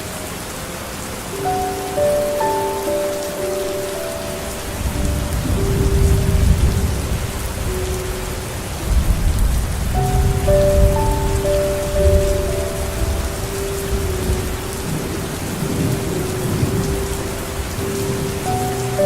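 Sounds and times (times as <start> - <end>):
soft melody of held notes: 0.0 - 19.0
steady rain falling: 0.0 - 19.0
low rolling thunder: 4.7 - 19.0.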